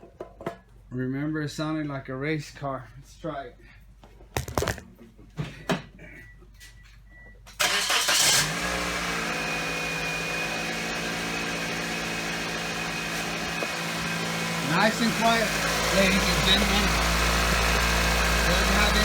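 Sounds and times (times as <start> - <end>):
car engine starting and idling: 7.6 - 19.0.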